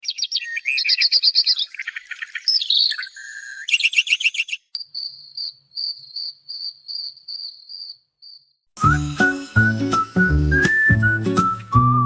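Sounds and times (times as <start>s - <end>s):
birds singing in trills: 0.0s - 8.0s
cricket-like insect chirping: 4.8s - 8.6s.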